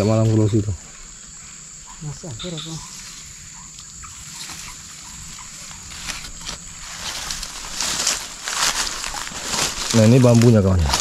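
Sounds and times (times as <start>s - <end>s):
high-pitched insect chirring: 0.0s - 11.0s
rustling and handling noises: 5.6s - 11.0s.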